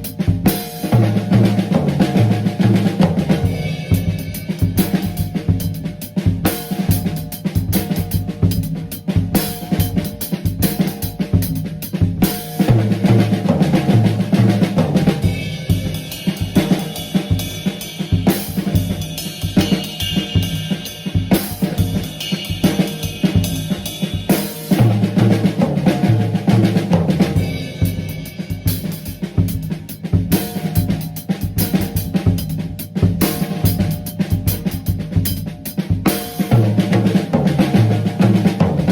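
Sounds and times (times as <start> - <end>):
bass drum: 0.0 - 38.9
lower drum strokes: 0.0 - 38.9
snare drum: 0.0 - 38.9
cymbals: 13.9 - 29.6.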